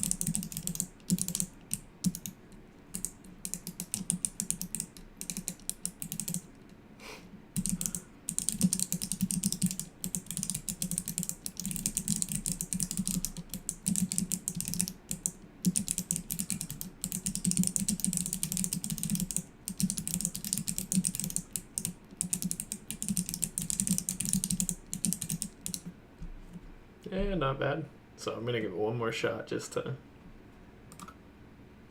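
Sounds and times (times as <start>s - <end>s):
fast typing on bare keyboard switches: 0.0s - 6.5s, 7.6s - 25.9s.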